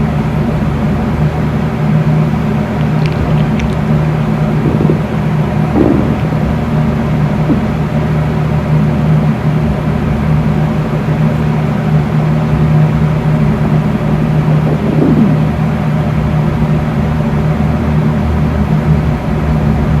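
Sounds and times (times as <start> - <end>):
fan humming: 0.0 - 20.0
stomach growling: 2.7 - 8.1, 13.7 - 16.2.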